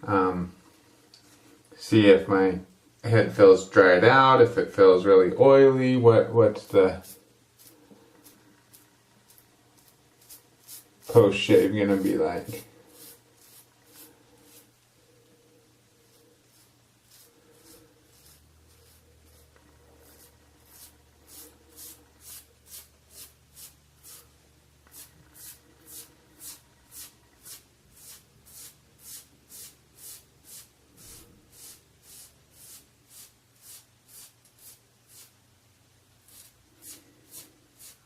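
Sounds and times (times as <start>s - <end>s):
razor scraping stubble: 6.4s - 14.7s, 16.1s - 35.4s, 36.2s - 38.0s.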